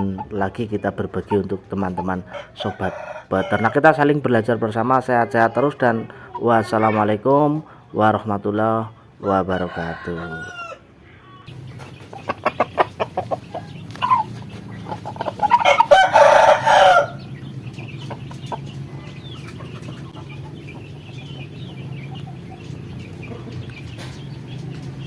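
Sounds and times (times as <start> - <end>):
chickens clucking: 0.0 - 25.0
rooster crowing: 2.3 - 3.9, 9.2 - 10.9, 15.4 - 17.3.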